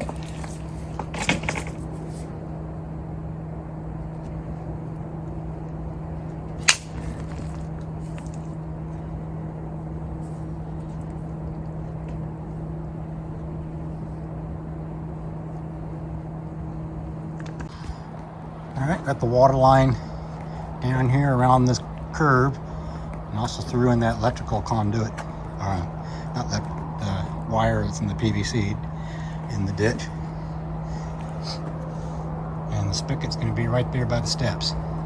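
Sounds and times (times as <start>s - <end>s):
low machine hum: 0.0s - 35.0s
sharp clack: 6.6s - 7.2s.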